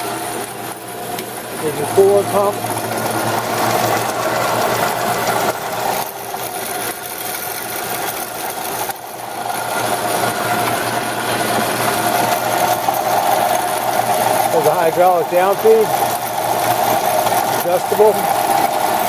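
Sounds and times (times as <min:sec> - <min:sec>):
band saw motor humming: 0:00.0 - 0:19.0
coolant pump: 0:00.0 - 0:19.0.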